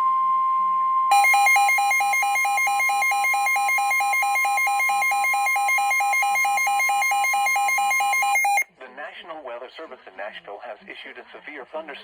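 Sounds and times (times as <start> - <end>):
steady warning alert tone: 1.1 - 8.6
rapid electronic beeping: 1.1 - 8.7.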